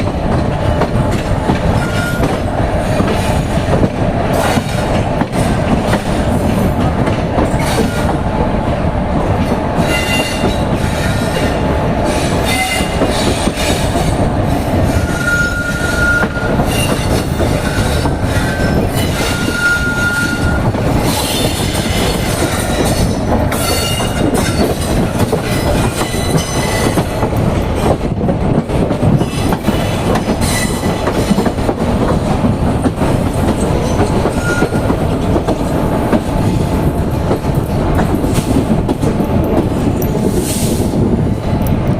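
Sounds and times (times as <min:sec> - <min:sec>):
train wheels rumbling on rails: 0:00.0 - 0:41.9
high-pitched wheel squeals: 0:15.0 - 0:20.6, 0:34.3 - 0:34.8.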